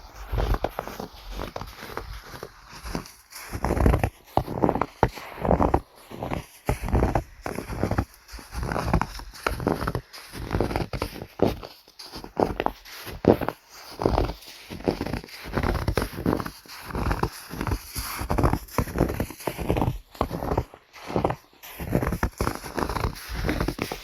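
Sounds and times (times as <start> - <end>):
footsteps crunching through snow: 0.0 - 24.0.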